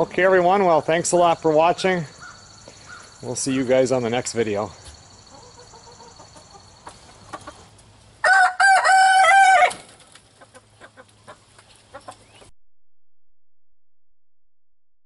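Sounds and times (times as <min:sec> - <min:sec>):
faint chicken clucks: 0:04.8 - 0:09.7, 0:10.3 - 0:12.5
rooster crowing: 0:08.2 - 0:09.9.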